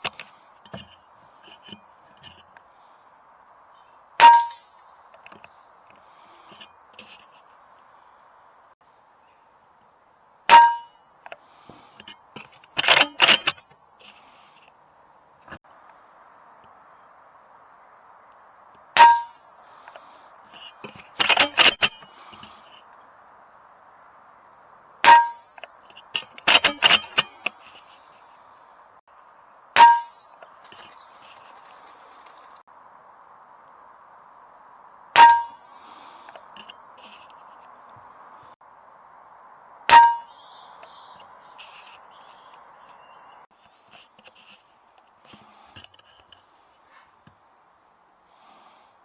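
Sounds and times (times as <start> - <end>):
metallic clang ringing: 4.2 - 4.7, 10.5 - 11.0, 19.0 - 19.4, 25.0 - 27.5, 29.8 - 30.2, 35.2 - 35.6, 39.9 - 40.4
short rattling noises: 11.2 - 14.7, 19.8 - 22.9, 25.0 - 28.2
air rifle shots with metallic ring: 26.5 - 27.4, 35.2 - 35.6, 39.9 - 40.4.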